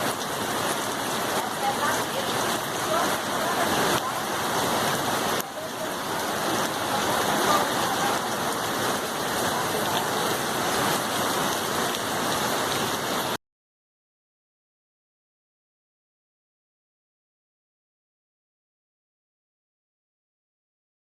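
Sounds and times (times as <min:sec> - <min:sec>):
river rushing in flood: 0:00.0 - 0:13.4.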